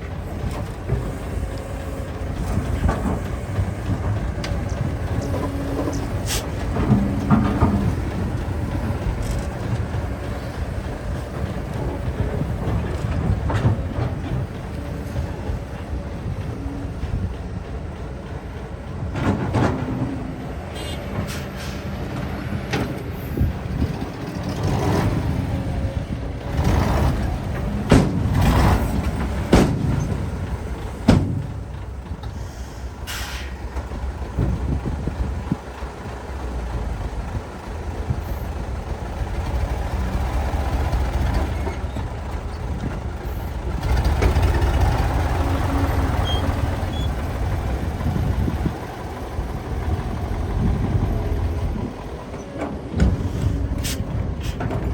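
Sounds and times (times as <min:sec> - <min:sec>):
heavy diesel machinery running: 0:00.0 - 0:54.9
metal clanks and knocks: 0:01.9 - 0:10.4, 0:19.0 - 0:23.1, 0:26.5 - 0:32.4.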